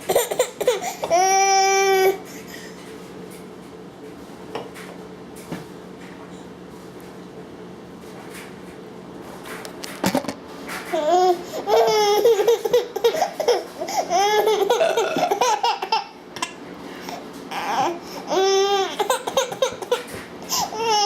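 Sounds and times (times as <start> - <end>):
baby laughing: 0.1 - 2.2, 11.0 - 16.6, 17.5 - 21.0.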